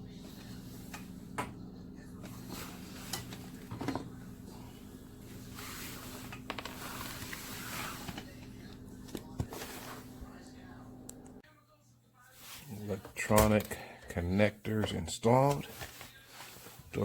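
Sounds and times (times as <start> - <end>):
steady low hum: 0.0 - 11.4.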